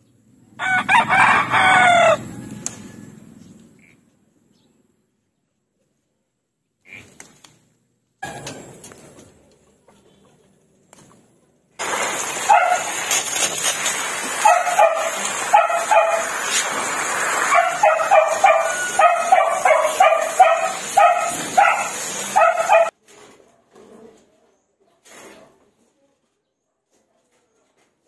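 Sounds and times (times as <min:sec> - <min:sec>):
steady rushing noise: 0:11.8 - 0:22.9
dog barking in high yaps: 0:12.4 - 0:13.2, 0:14.3 - 0:16.6, 0:17.4 - 0:23.0.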